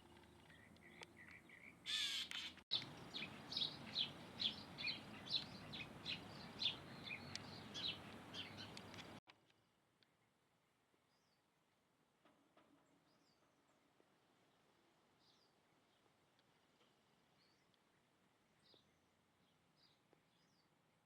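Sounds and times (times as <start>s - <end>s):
bird chirps: 0.0s - 9.2s
bird squawk: 1.2s - 9.2s
background hiss: 2.7s - 9.2s.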